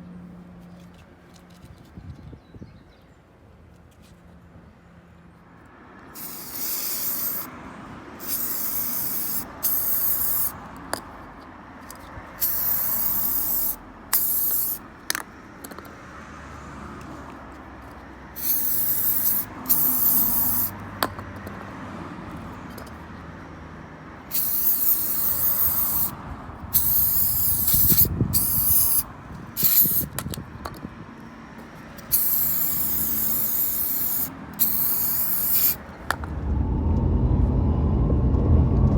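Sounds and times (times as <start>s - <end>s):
aerosol spray hissing: 6.2s - 7.5s, 8.2s - 10.6s, 12.4s - 14.8s, 18.4s - 20.8s, 24.3s - 30.1s, 32.0s - 35.8s.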